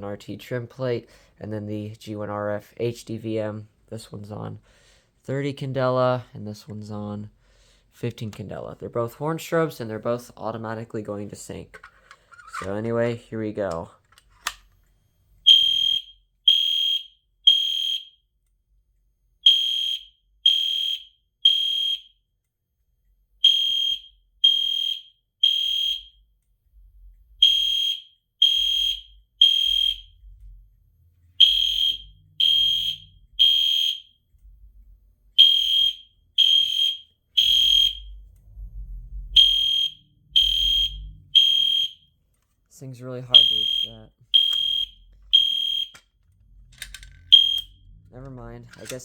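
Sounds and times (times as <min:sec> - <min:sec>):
high electronic horn beeps: 0:15.5 - 0:18.0, 0:27.4 - 0:30.3, 0:31.4 - 0:34.1, 0:35.4 - 0:38.3, 0:39.4 - 0:42.1, 0:43.3 - 0:46.0, 0:47.3 - 0:48.0.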